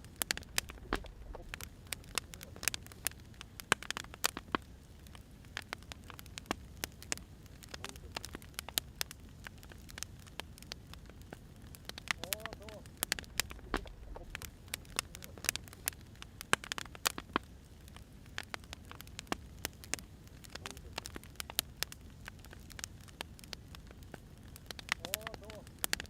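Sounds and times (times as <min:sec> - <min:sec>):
wood fire crackling: 0:00.0 - 0:26.0
low rumble: 0:00.2 - 0:02.2, 0:13.1 - 0:15.2.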